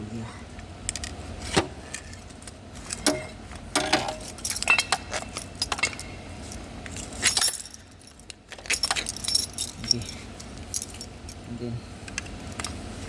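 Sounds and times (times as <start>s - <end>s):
metal tools clicking and rattling: 2.8s - 11.5s.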